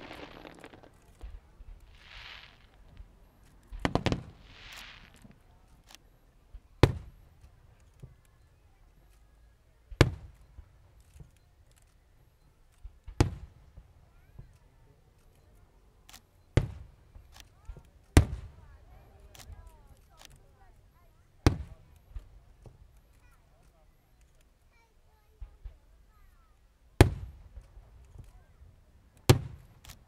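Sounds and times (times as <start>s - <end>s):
firework hiss: 0.0s - 3.2s, 3.8s - 5.4s
fireworks bangs and booms: 0.0s - 5.6s, 21.5s - 22.8s.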